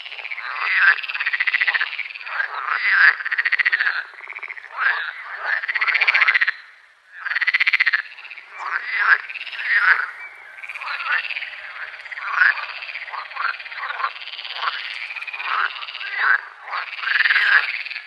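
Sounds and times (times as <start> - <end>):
frogs croaking: 0.0 - 18.0.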